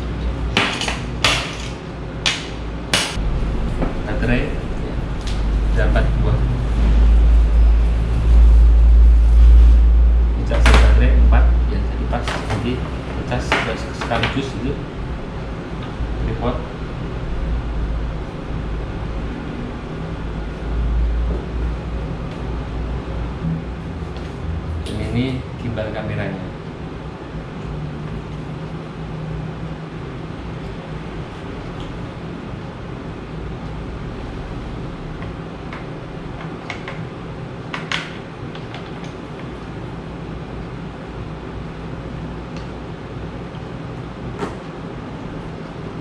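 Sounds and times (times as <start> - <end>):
steady fan-like hum: 0.0 - 46.0
steady low rumble: 1.8 - 36.4.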